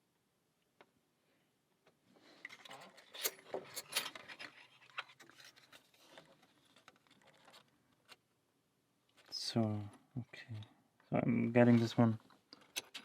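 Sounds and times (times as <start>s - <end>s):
lock pick clicking and scraping: 2.4s - 5.2s, 12.5s - 13.0s.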